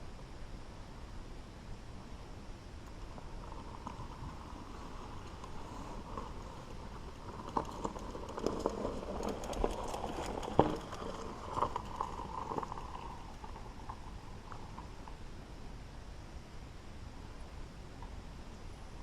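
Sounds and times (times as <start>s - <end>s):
bike tyres on dirt trail: 2.3s - 18.6s
bike rattling and knocking: 3.2s - 15.1s.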